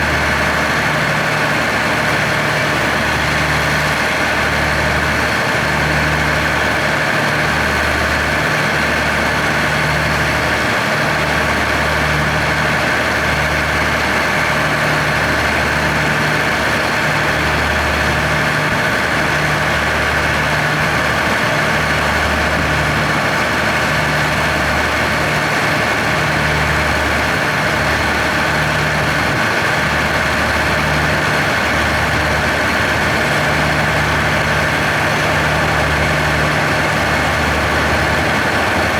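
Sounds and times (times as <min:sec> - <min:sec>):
diesel locomotive idling: 0:00.0 - 0:38.9.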